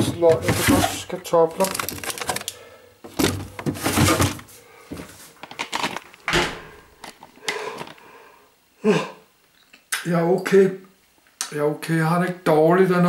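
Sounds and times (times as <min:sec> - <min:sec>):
handling rustles and knocks: 0:00.0 - 0:02.4, 0:03.0 - 0:08.0.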